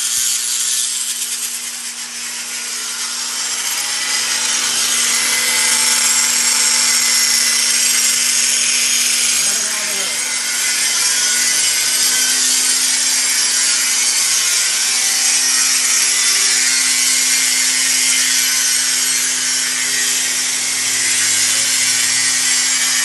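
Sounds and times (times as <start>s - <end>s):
power saw running: 0.0s - 23.0s.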